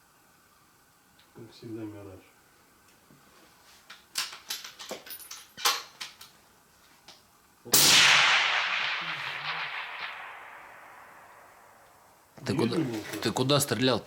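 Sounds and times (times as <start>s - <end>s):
rifle shot: 7.7s - 12.0s.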